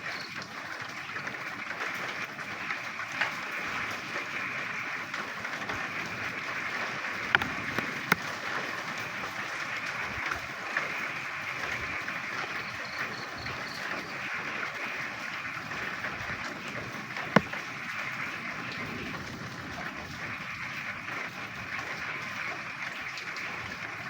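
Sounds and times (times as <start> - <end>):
rain: 0.0 - 24.0
frogs croaking: 4.2 - 16.4.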